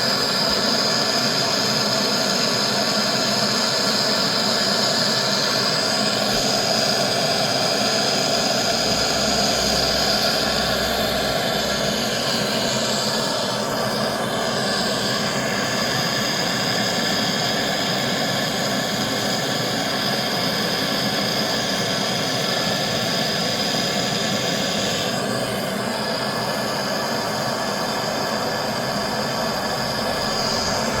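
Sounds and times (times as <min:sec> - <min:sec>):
machine mechanical drone: 0:05.8 - 0:16.1, 0:28.1 - 0:31.0
high steady tone: 0:08.0 - 0:13.9, 0:28.7 - 0:31.0.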